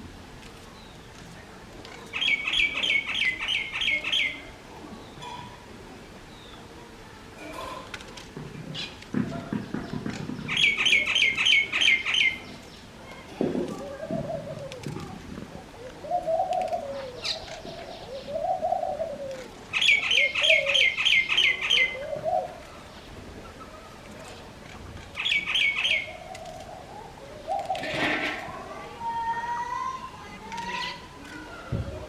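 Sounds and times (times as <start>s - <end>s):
pigeons cooing: 13.1s - 24.6s, 25.2s - 28.8s.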